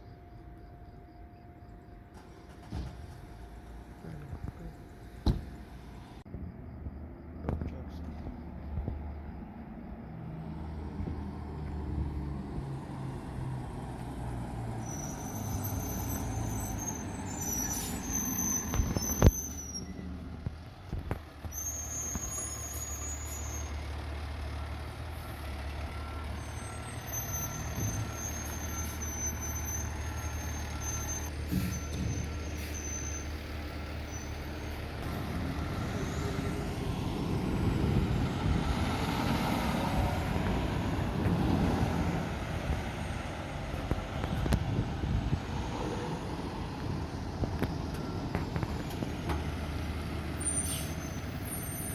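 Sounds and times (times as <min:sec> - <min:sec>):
diesel engine idling: 0:00.0 - 0:06.3, 0:09.8 - 0:51.9.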